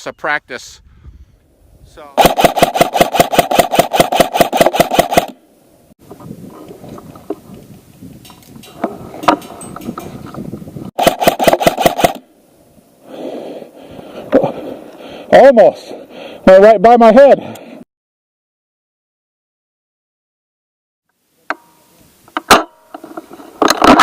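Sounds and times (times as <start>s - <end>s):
airsoft rifle automatic fire: 2.2s - 5.4s, 11.0s - 12.2s.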